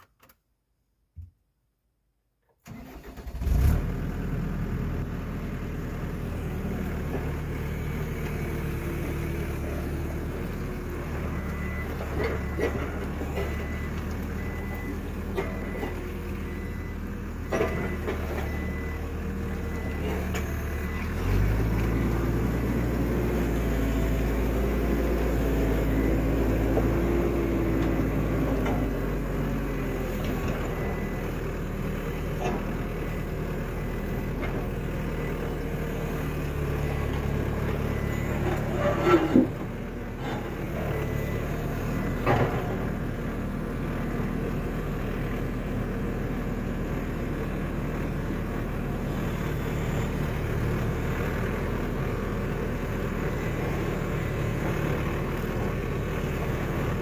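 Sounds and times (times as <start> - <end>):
engine running and revving: 3.2 - 57.0.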